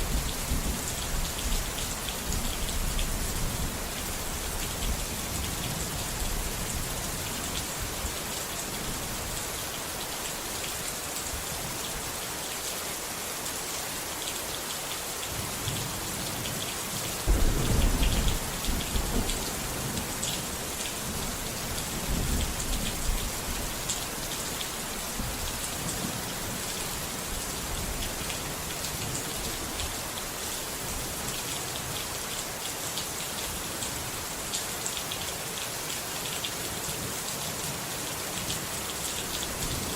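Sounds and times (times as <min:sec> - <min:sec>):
steady rain: 0:00.0 - 0:39.9
thunder rumble: 0:17.3 - 0:20.3.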